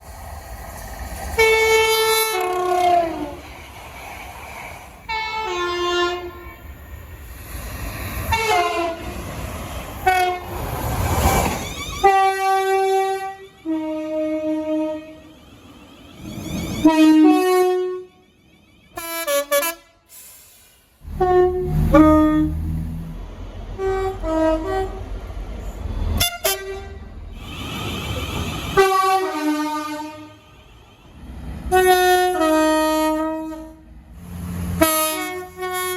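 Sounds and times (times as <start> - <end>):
rumble of passing trains: 0.0 - 35.9
train horn blasts: 1.4 - 3.4, 5.1 - 6.6, 8.3 - 9.1, 10.0 - 10.5, 12.0 - 15.3, 16.7 - 20.1, 21.0 - 23.2, 23.8 - 25.1, 26.2 - 33.9, 34.8 - 35.9.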